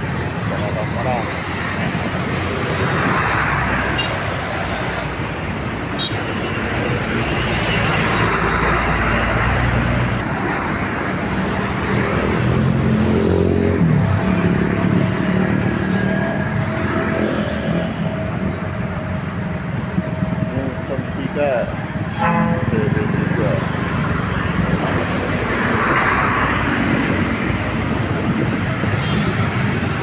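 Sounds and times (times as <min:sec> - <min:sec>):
road traffic passing: 0:00.0 - 0:30.0
heavy engine hum: 0:17.0 - 0:28.8.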